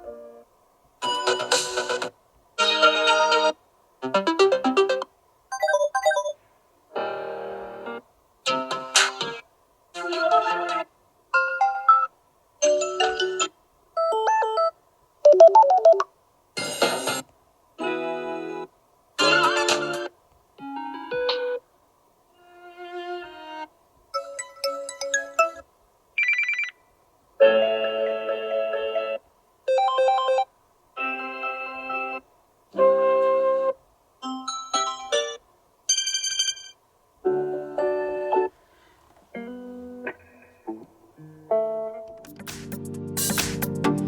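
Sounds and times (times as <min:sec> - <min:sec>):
melodic ringtone snippets: 0:04.3 - 0:06.4, 0:15.3 - 0:16.0, 0:26.2 - 0:26.8.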